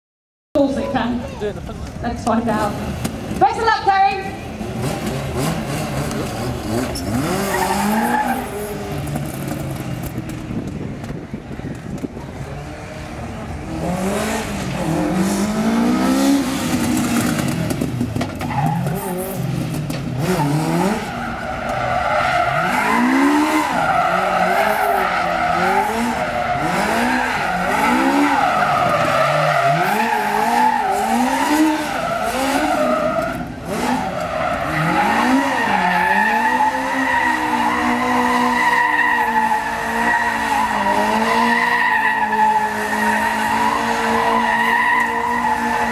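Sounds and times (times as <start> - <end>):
tyres skidding and squealing: 0.6 - 45.9
car engine revving: 4.3 - 45.9.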